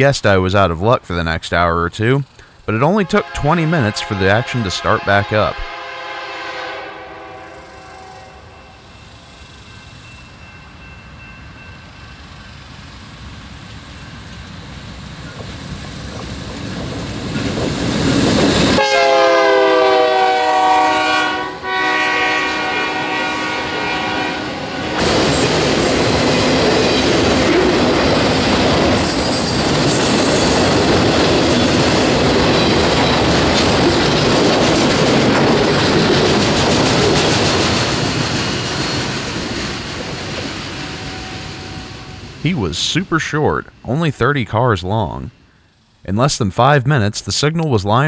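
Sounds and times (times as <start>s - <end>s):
train air horn blasts: 3.0s - 8.9s, 18.7s - 25.2s
train cars rumbling past: 3.0s - 44.0s
wheel clatter on rails: 29.6s - 40.8s.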